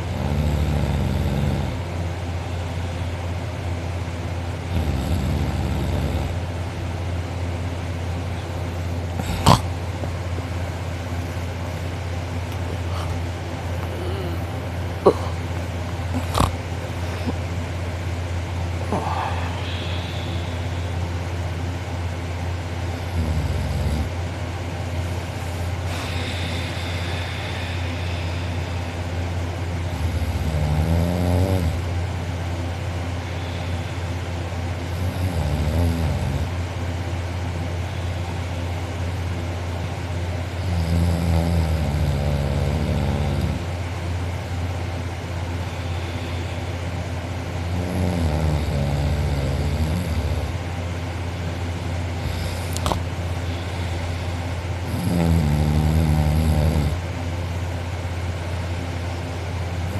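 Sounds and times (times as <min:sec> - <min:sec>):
man snoring loudly: 0:00.0 - 0:01.8, 0:04.6 - 0:06.5, 0:09.1 - 0:09.7, 0:12.8 - 0:15.4, 0:16.1 - 0:16.6, 0:23.0 - 0:24.2, 0:25.7 - 0:28.8, 0:29.9 - 0:32.0, 0:34.8 - 0:36.6, 0:40.6 - 0:43.8, 0:47.6 - 0:50.7, 0:52.1 - 0:57.1
steady low hum: 0:00.0 - 0:59.9.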